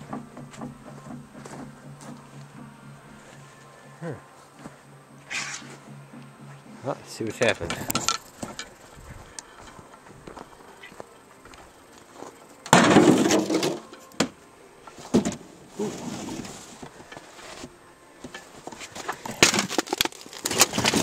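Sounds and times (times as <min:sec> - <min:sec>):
metal plate scraping: 0:05.2 - 0:05.8.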